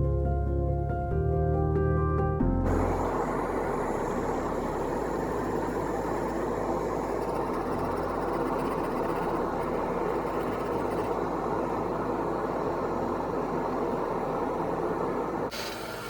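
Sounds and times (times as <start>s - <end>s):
music: 0.0s - 5.8s
machine humming: 2.4s - 16.0s.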